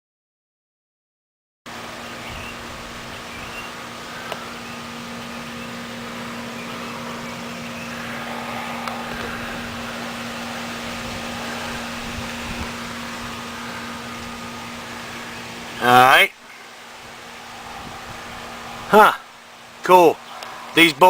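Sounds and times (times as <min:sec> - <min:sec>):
low hum: 0:01.7 - 0:21.0
faint ticks: 0:04.2 - 0:04.5.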